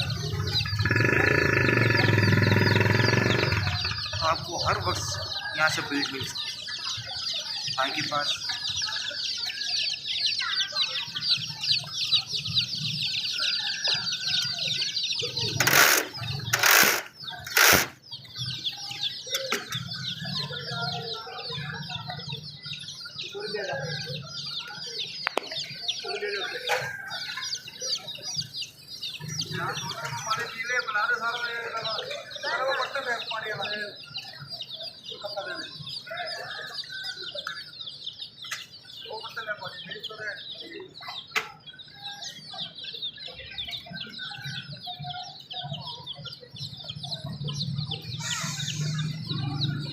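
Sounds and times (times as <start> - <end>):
chickens clucking: 0.0 - 49.9
chicks peeping: 0.0 - 49.9
loud rustling bursts: 15.6 - 18.0.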